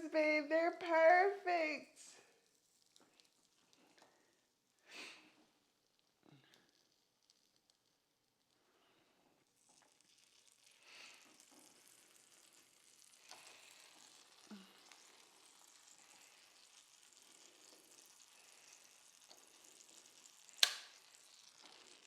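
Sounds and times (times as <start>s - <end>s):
pancakes sizzling in a pan: 2.1s - 22.0s
sharp click: 20.6s - 20.9s.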